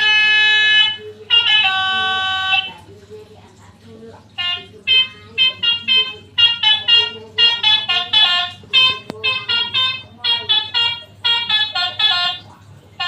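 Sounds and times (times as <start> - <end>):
bus horn honking a melody: 0.0 - 2.8, 4.4 - 13.0.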